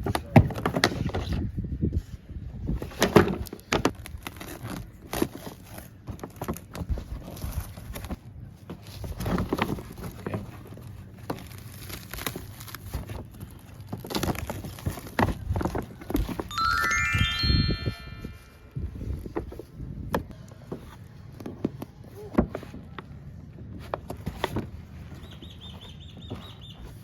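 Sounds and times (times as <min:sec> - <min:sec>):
packaging crinkling and rustling: 0:08.8 - 0:16.4.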